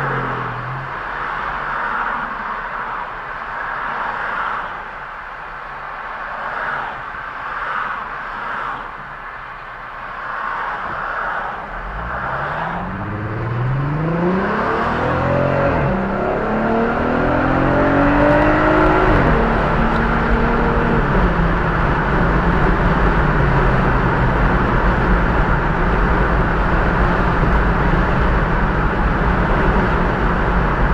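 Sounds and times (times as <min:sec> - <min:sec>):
road noise: 0:00.0 - 0:30.9
car engine accelerating: 0:11.7 - 0:30.9.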